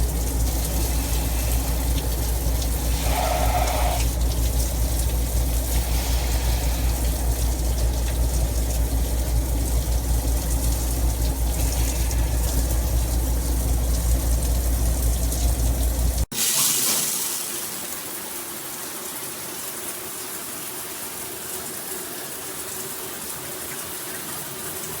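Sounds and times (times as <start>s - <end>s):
shower head spraying water: 0.0s - 16.0s.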